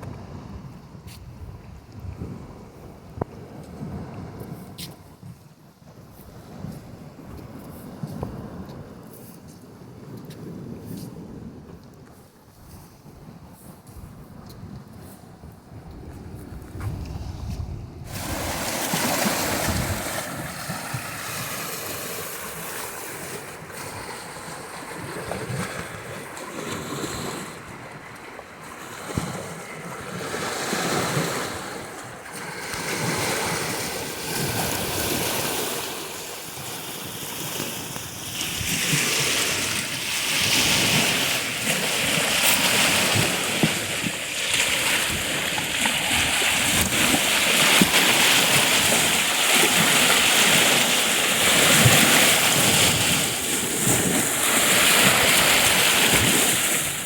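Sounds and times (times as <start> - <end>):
surf breaking on shore: 15.8 - 57.0.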